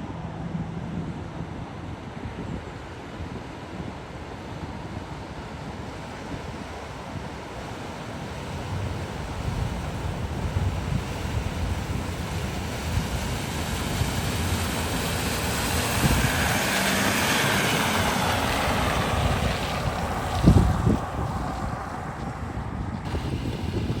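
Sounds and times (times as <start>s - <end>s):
wind buffeting microphone: 0.1s - 24.0s
vehicle splashing through water: 6.0s - 24.0s.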